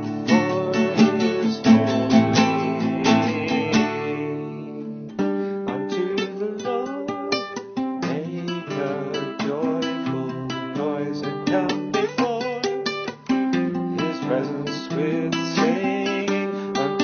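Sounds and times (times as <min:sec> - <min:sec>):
strummed acoustic guitar: 0:00.0 - 0:17.0.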